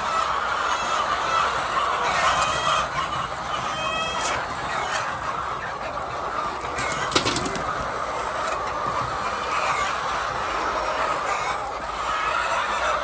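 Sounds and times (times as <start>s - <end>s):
chickens calling: 0.0s - 13.0s
sharp clicks and knocks: 6.9s - 7.7s.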